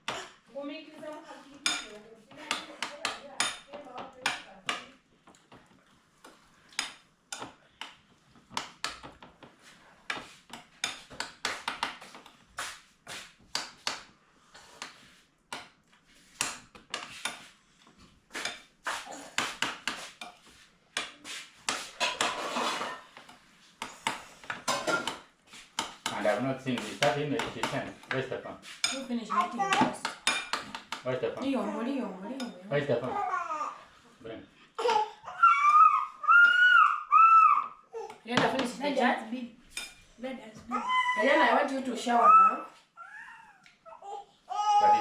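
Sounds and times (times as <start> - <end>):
cutlery clinking on plates: 1.6 - 5.7, 6.3 - 12.4, 13.2 - 31.5, 39.7 - 40.1.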